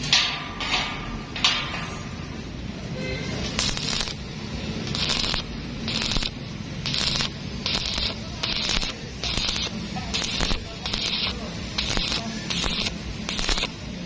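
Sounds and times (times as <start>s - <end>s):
arc welding crackling: 3.4s - 14.0s.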